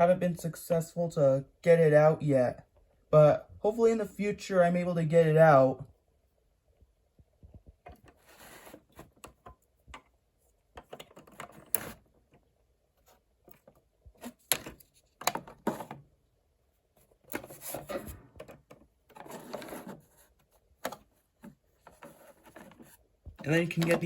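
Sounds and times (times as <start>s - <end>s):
scraping rustles: 8.1s - 9.3s, 16.9s - 24.0s
plastic toy parts clicking and rattling: 23.4s - 24.0s.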